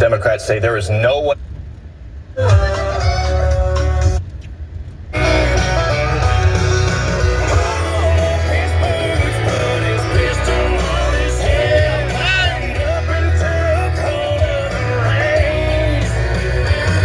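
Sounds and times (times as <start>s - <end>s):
rock song with singing and guitar: 5.2s - 17.0s.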